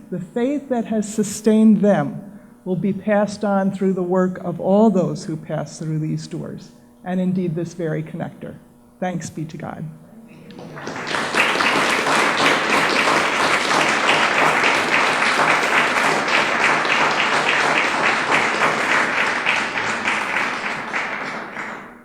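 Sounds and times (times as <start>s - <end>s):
audience applauding: 10.4s - 22.0s.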